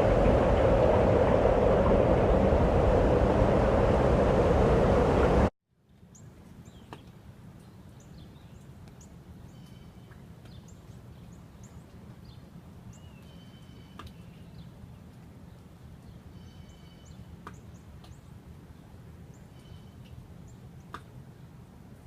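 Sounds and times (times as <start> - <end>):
loud rushing noise: 0.0 - 5.5
low steady rumble: 0.0 - 5.5.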